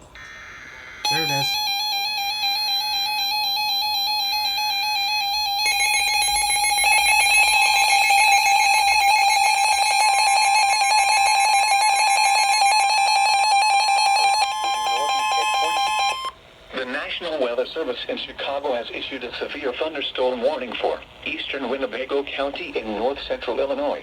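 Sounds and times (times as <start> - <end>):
electronic alarm tone: 0.2 - 16.4.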